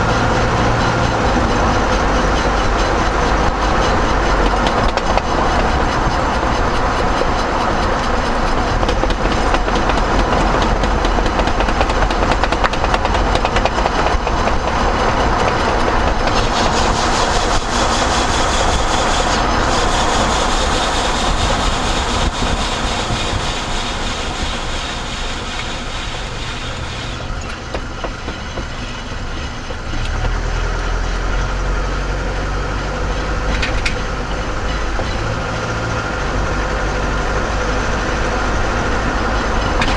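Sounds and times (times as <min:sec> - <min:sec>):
rhythmic tire knocking: 0:00.0 - 0:31.6
road noise: 0:00.0 - 0:39.9.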